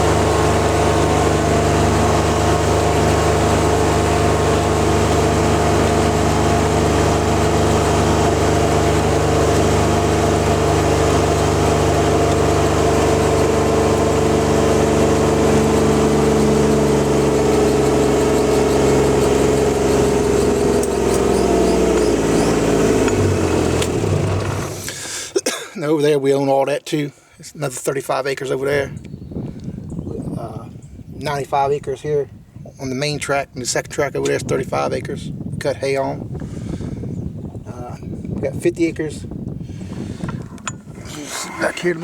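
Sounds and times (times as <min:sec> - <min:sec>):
utility vehicle engine running: 0:00.0 - 0:25.3.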